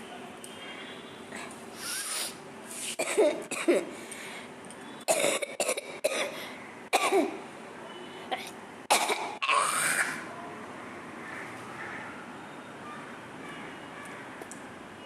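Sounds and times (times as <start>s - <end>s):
person coughing: 3.0s - 3.9s, 5.1s - 6.4s, 7.0s - 7.4s, 8.4s - 10.2s.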